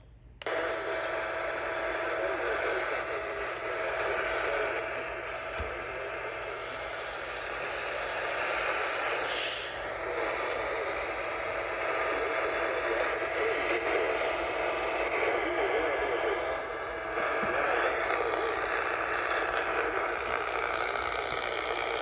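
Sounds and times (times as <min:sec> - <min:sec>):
radio static hiss: 0:00.0 - 0:22.0.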